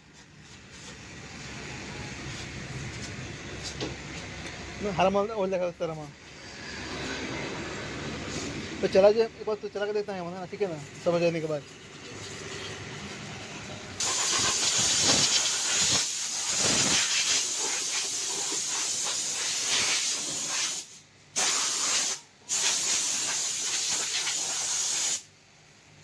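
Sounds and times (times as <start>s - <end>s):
spray gun hissing: 14.0s - 25.3s.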